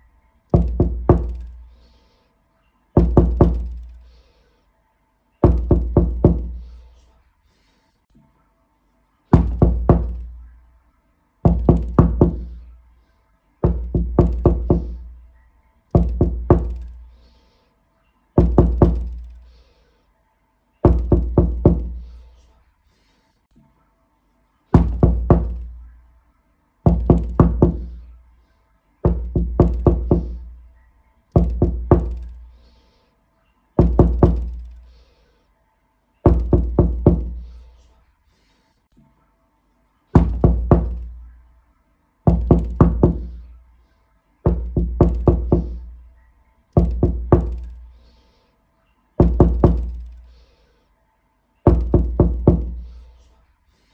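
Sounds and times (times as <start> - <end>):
knocking on door: 0.6 - 1.6, 3.0 - 3.9, 5.4 - 6.6, 9.4 - 10.4, 11.5 - 12.6, 13.6 - 15.1, 16.0 - 17.0, 18.4 - 19.3, 20.9 - 22.0, 24.8 - 25.8, 26.9 - 28.0, 29.1 - 30.5, 31.4 - 32.4, 33.8 - 34.7, 36.3 - 37.4, 40.2 - 41.2, 42.3 - 43.4, 44.5 - 45.9, 46.8 - 47.8, 49.2 - 50.2, 51.7 - 52.9.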